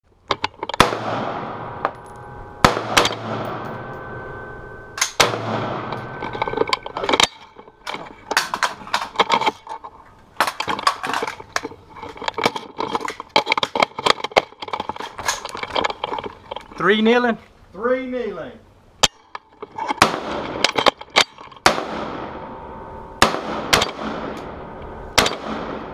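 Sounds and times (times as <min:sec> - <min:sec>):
rifle shots echoing: 0:00.8 - 0:04.2, 0:05.0 - 0:06.4, 0:20.0 - 0:20.7, 0:21.6 - 0:25.9.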